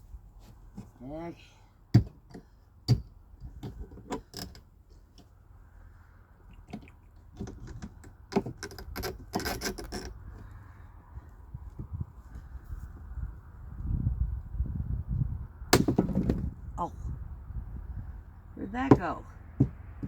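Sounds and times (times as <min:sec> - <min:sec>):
nails clinking and scraping: 0:06.6 - 0:10.2.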